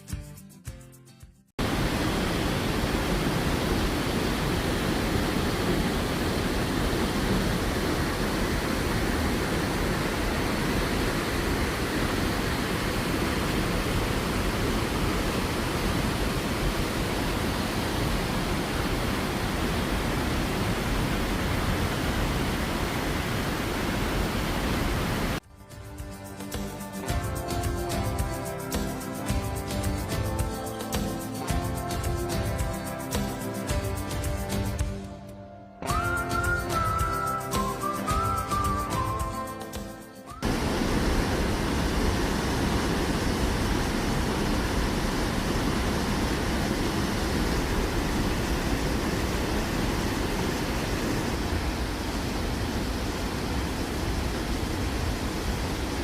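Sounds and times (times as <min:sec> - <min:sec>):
waterfall rushing: 0:01.6 - 0:25.4, 0:40.3 - 0:56.0.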